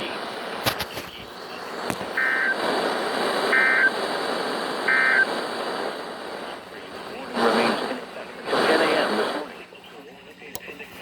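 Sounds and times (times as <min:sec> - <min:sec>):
radio receiver hiss: 0:00.0 - 0:11.0
sharp static clicks: 0:00.0 - 0:11.0
digital data tone bursts: 0:02.1 - 0:02.6, 0:03.5 - 0:04.0, 0:04.9 - 0:05.3.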